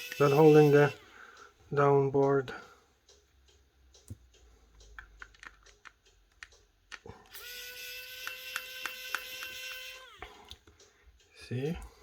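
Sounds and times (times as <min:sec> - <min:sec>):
electric screwdriver whining: 0:07.3 - 0:10.2
small tools clicking: 0:08.0 - 0:09.7.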